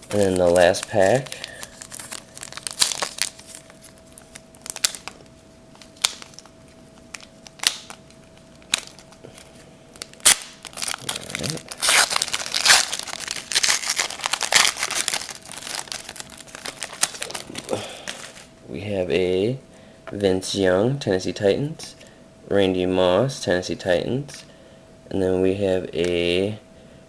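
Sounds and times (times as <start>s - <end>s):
wrapper crackling and crinkling: 0.0s - 18.5s.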